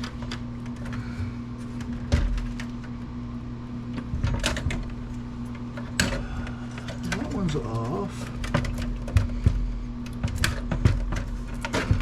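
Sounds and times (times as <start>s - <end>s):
steady low hum: 0.0s - 12.0s
clicks and knocks of prying: 3.9s - 12.0s.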